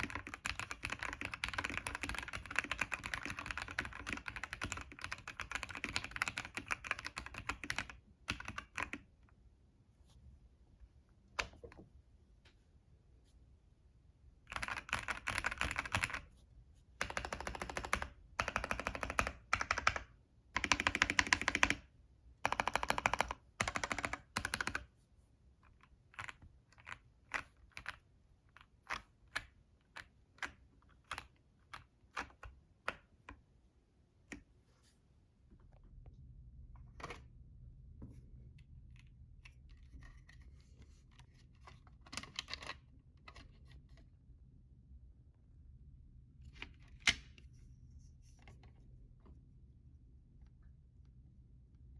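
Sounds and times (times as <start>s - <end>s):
keyboard typing: 0.0s - 9.1s, 14.5s - 16.3s, 17.0s - 21.8s, 22.4s - 24.9s.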